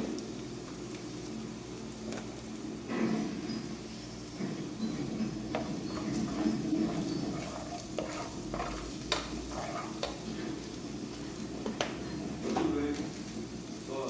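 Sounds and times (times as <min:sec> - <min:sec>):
food sizzling in a pot: 0:00.0 - 0:14.0
spoon stirring: 0:05.5 - 0:10.6.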